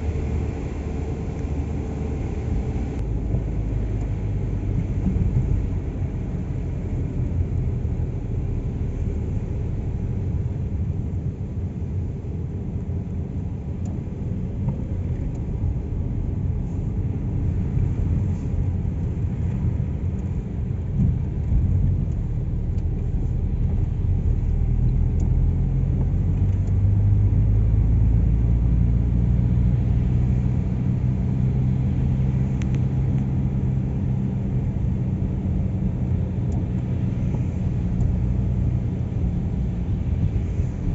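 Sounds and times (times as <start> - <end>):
car engine and tyre rumble: 0.0 - 40.9.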